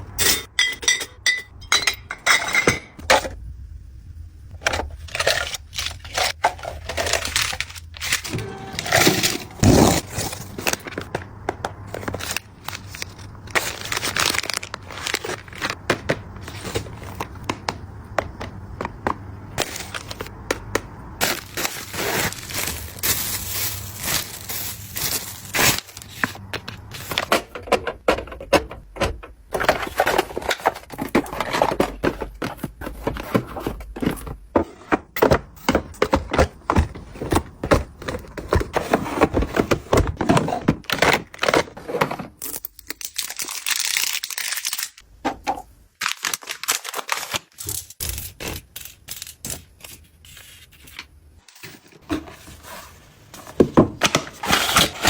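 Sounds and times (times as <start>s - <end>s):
packaging crinkling: 5.0s - 18.4s, 19.6s - 27.3s, 36.1s - 45.0s, 46.0s - 50.9s.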